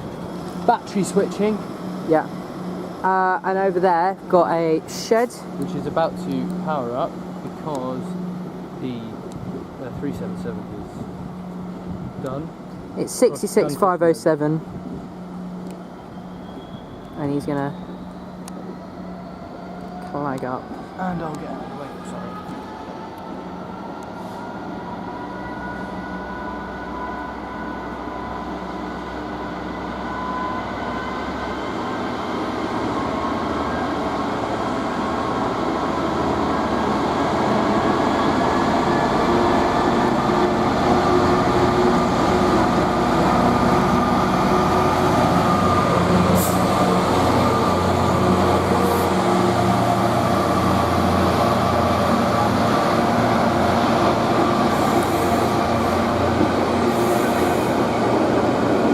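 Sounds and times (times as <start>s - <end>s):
diesel locomotive engine rumble: 0.0s - 58.9s.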